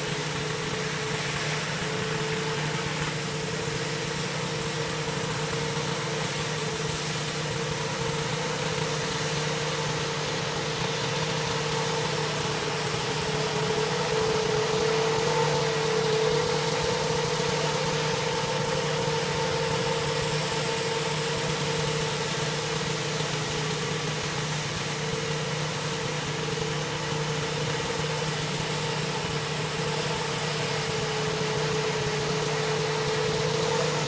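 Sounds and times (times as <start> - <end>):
high-pressure water spray hiss: 0.0 - 34.0
pressure washer engine hum: 0.0 - 34.0.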